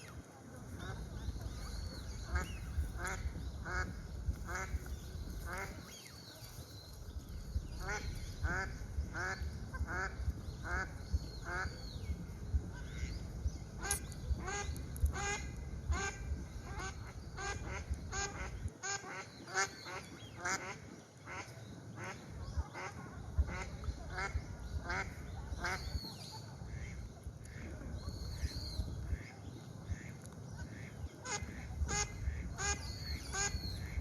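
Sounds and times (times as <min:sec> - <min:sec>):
low rumble: 0:00.8 - 0:18.8
ducks quacking: 0:02.0 - 0:06.2, 0:07.7 - 0:11.8, 0:13.8 - 0:34.0.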